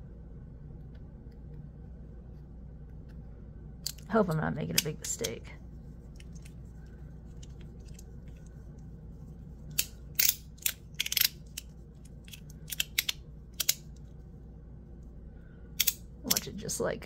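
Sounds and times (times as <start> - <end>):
metal fidget slider clicking: 9.7 - 13.8.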